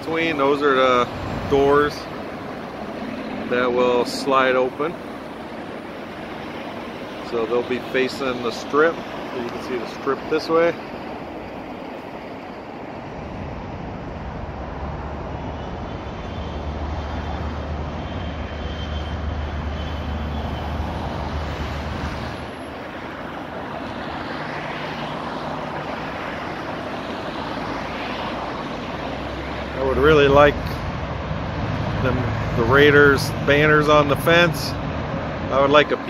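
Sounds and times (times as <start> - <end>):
freeway traffic roar: 0.0 - 36.0
faint high whine: 0.1 - 24.3.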